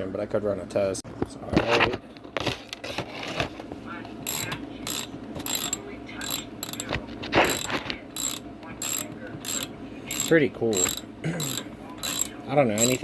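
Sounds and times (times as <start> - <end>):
recoil starter rope whirring: 4.3 - 13.0.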